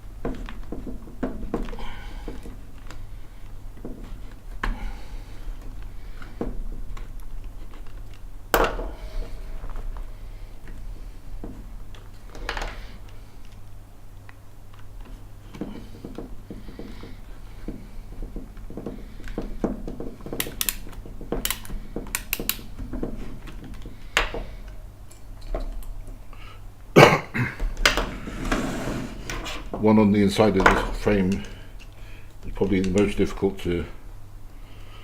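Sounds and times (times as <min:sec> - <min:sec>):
screws and tools clicking: 0:20.3 - 0:22.7.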